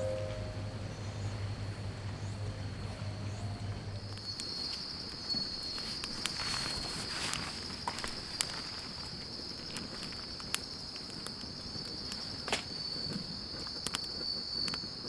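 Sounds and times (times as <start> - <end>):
faint low hum: 0.0 - 5.4
insects droning: 0.0 - 15.0.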